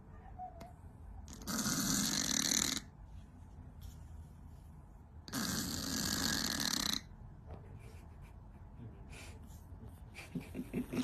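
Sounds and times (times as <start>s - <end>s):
cat snoring: 1.3s - 2.9s, 5.3s - 7.1s.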